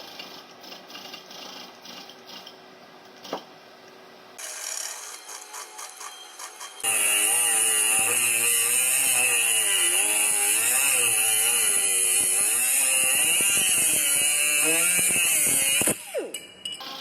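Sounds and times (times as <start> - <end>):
electric power tool running: 4.4 - 16.4.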